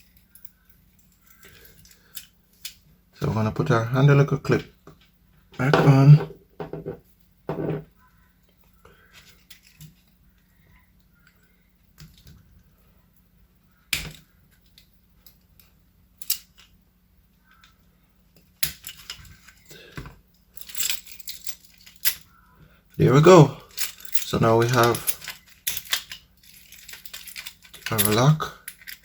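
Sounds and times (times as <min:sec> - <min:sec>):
metal lock parts clicking: 0:13.9 - 0:16.8, 0:18.6 - 0:19.8, 0:20.6 - 0:22.3, 0:23.2 - 0:29.0.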